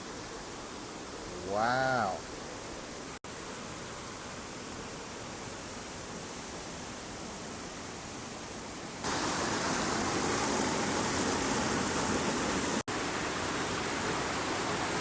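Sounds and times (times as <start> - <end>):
waterfall rushing: 0.0 - 3.2, 9.0 - 15.0.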